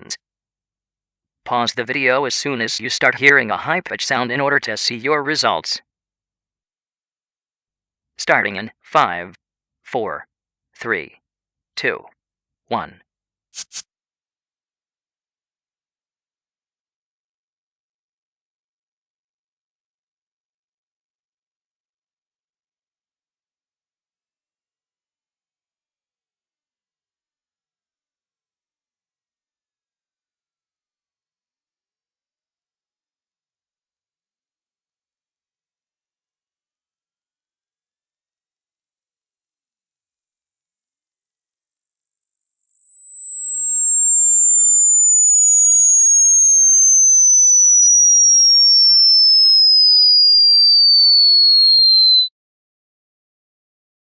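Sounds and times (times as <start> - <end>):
sine tone sliding down: 23.7 - 52.3.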